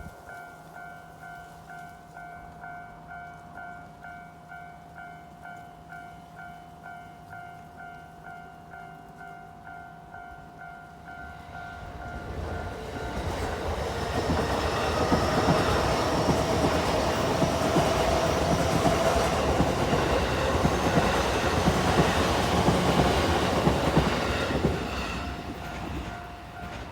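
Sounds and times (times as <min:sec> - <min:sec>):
level-crossing warning bell: 0:00.0 - 0:26.9
train wheels clattering on rails: 0:11.2 - 0:26.9.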